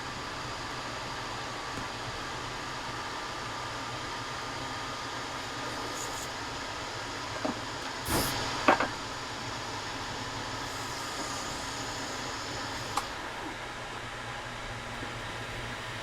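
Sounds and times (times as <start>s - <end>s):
machinery hum: 0.0s - 16.0s
air hiss: 5.6s - 6.4s, 8.0s - 8.8s, 10.5s - 13.1s.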